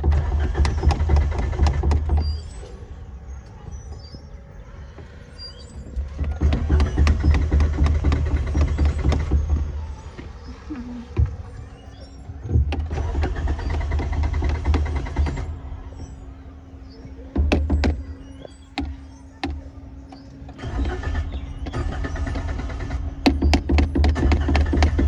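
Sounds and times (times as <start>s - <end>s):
starter cranking engine: 0.0s - 2.6s, 6.1s - 10.0s, 12.7s - 16.3s, 20.5s - 25.0s
sharp clicks: 6.0s - 10.3s, 12.6s - 16.2s.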